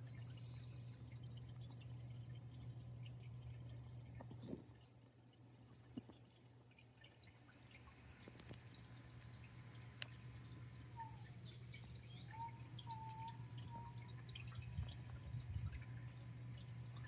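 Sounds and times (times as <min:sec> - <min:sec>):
water trickling into pond: 0:00.0 - 0:17.0
bird whistling: 0:12.1 - 0:14.0.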